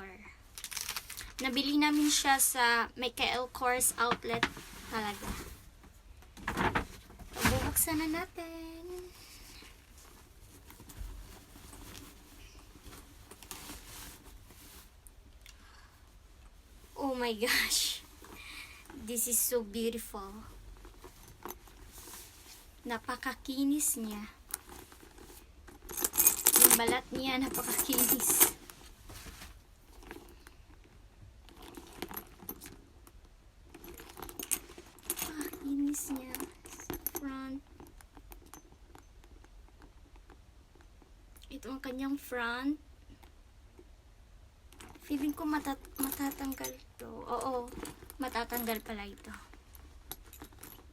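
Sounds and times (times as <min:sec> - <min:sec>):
packaging rustling and clicking: 0:00.6 - 0:01.4
metallic jingling of bag hardware: 0:20.7 - 0:22.3, 0:23.8 - 0:28.7, 0:31.5 - 0:33.0, 0:33.6 - 0:40.0, 0:44.7 - 0:50.9.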